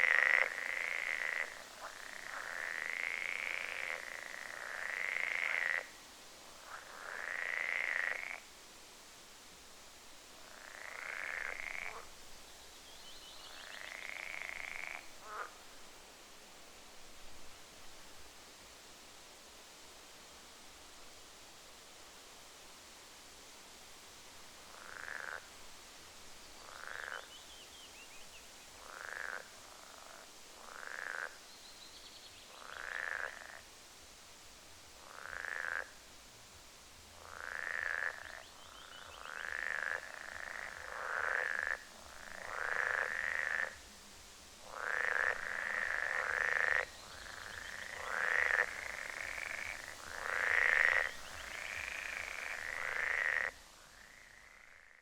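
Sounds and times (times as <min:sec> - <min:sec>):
frogs croaking: 0:00.0 - 0:08.5, 0:10.4 - 0:12.2, 0:13.4 - 0:15.7, 0:24.7 - 0:25.5, 0:26.6 - 0:27.6, 0:28.8 - 0:31.5, 0:32.5 - 0:33.7, 0:35.0 - 0:36.1, 0:37.1 - 0:43.9, 0:44.6 - 0:55.0.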